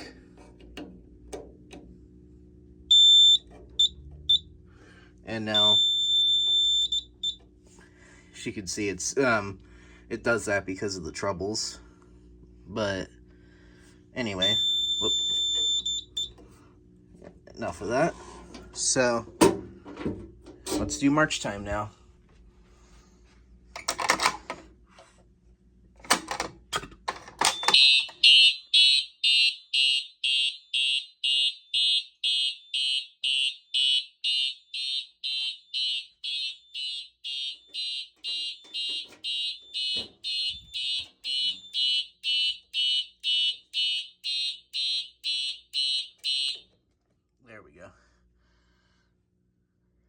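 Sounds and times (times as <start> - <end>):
fire alarm horn blasts: 2.9 - 4.5, 5.4 - 7.4, 14.2 - 16.3, 27.5 - 46.7.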